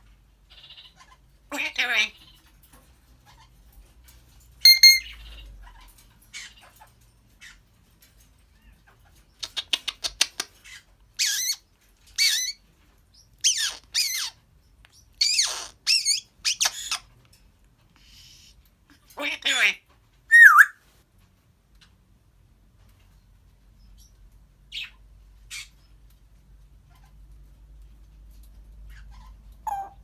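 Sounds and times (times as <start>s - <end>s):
parrot squawks and whistles: 4.7s - 5.1s, 20.3s - 20.8s.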